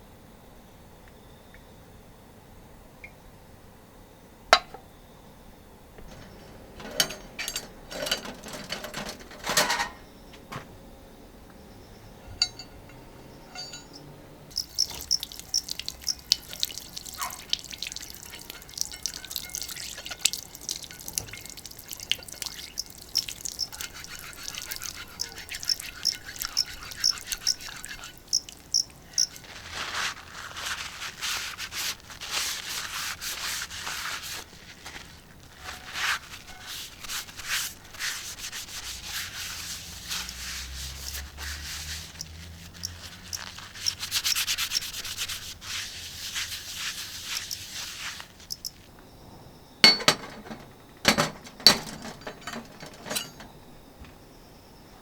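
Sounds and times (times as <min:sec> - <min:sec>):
scratchy rubbing on steel plate: 0:14.5 - 0:48.7.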